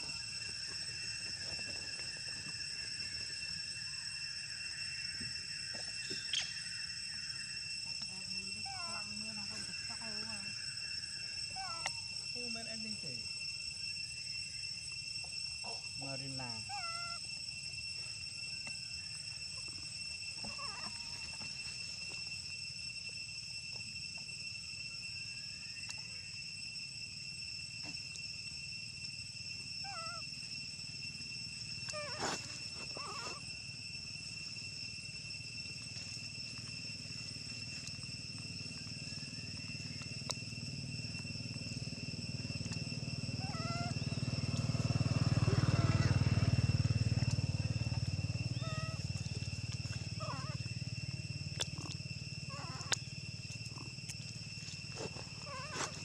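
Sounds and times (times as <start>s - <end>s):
high-pitched ringing tones: 0.0s - 56.0s
monkeys squeaking: 20.5s - 21.2s, 48.6s - 49.4s, 50.1s - 50.6s.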